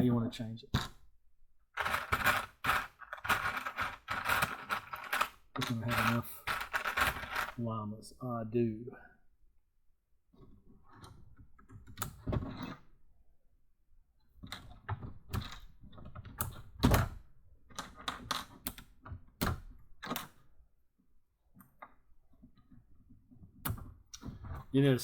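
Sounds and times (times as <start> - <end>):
plastic pieces clicking together: 1.8 - 7.6.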